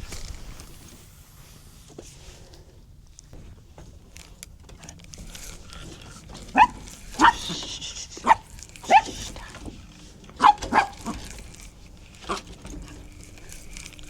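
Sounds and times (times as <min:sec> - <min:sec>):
faint rustling: 0:00.0 - 0:14.0
puppy yapping: 0:06.4 - 0:09.6, 0:10.4 - 0:11.4.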